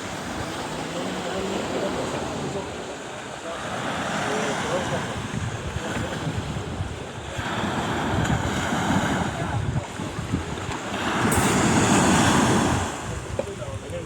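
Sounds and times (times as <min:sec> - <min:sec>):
sea waves washing onto shore: 0:00.0 - 0:14.0
wind buffeting microphone: 0:03.9 - 0:14.0.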